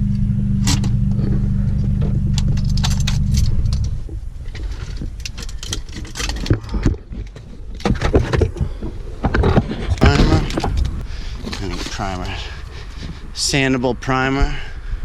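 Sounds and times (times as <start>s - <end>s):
low motor hum: 0.0s - 7.8s.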